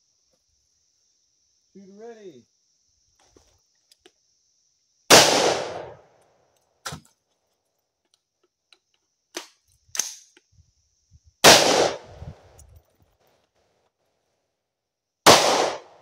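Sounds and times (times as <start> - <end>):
rifle shot: 5.1 - 6.0, 11.4 - 12.2, 15.3 - 16.0.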